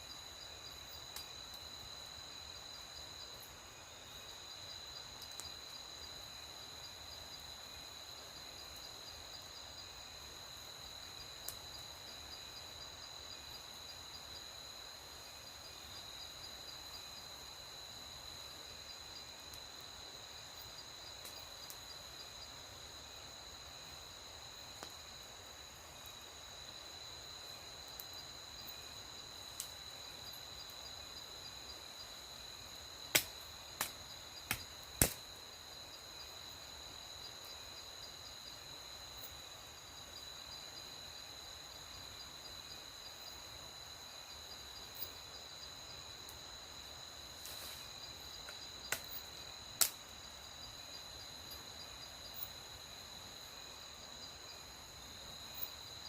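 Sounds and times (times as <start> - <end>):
crickets trilling: 0.0 - 56.0
sharp cracks: 33.1 - 35.2.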